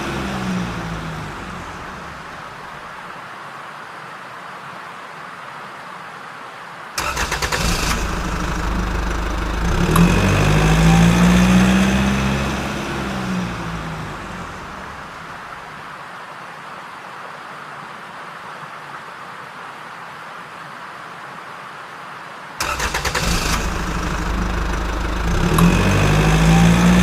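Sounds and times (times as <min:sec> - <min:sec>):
engine starting: 0:07.0 - 0:11.9, 0:22.6 - 0:27.0.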